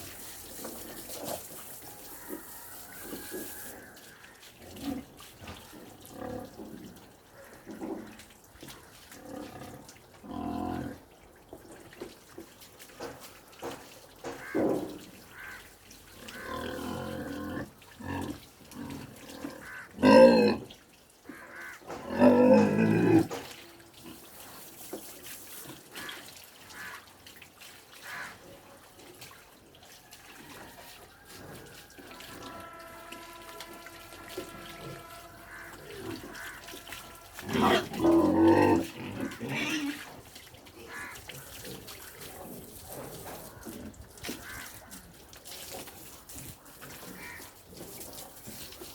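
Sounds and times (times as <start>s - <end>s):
pigs grunting: 16.2s - 20.7s, 21.3s - 23.4s, 34.5s - 45.1s
pig squealing: 34.2s - 40.1s.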